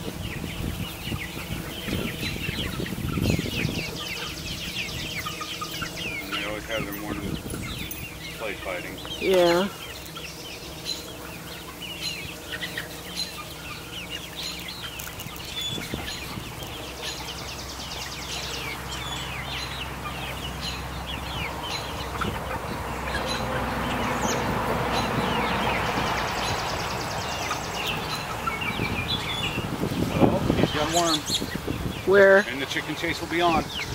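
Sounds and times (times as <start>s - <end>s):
chicks peeping and clucking: 0.0s - 33.9s.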